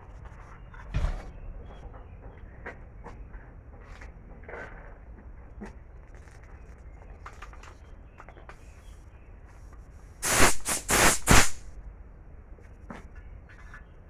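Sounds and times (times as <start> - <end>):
compressed air blasts hissing: 10.2 - 11.8.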